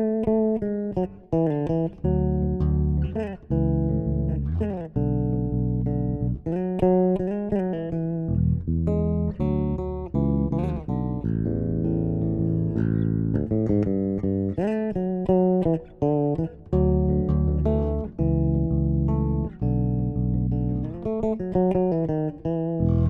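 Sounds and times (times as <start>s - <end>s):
electric bass guitar playing: 0.0s - 23.0s.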